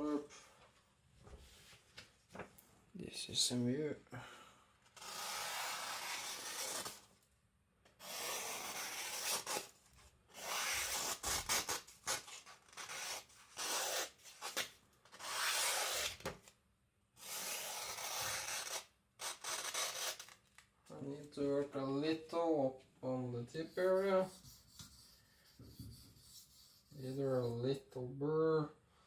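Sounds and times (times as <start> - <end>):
knife slicing paper: 5.0 - 7.1, 8.0 - 9.7, 10.4 - 16.4, 17.2 - 20.4.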